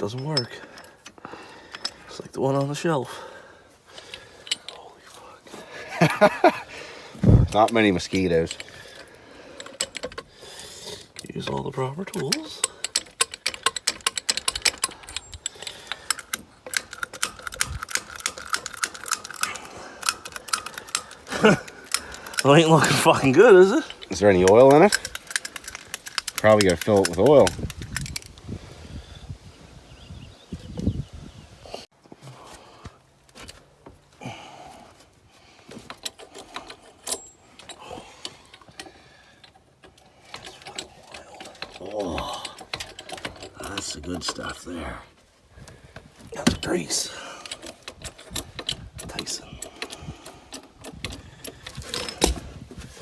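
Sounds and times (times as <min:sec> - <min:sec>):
metallic clicking of hand tool: 0:07.5 - 0:28.4, 0:35.9 - 0:44.6, 0:46.4 - 0:52.5.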